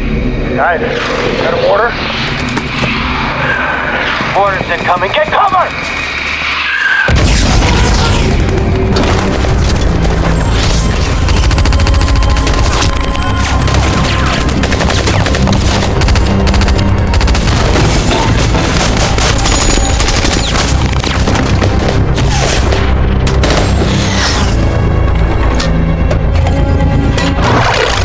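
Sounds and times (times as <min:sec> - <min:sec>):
dramatic orchestral score: 0:00.0 - 0:28.0
heavy booming explosions: 0:07.1 - 0:24.0.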